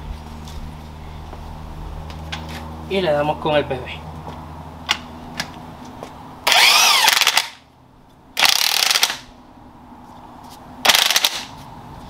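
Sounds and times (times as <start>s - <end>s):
impact wrench whining: 6.4s - 7.6s, 8.4s - 9.3s, 10.9s - 11.5s.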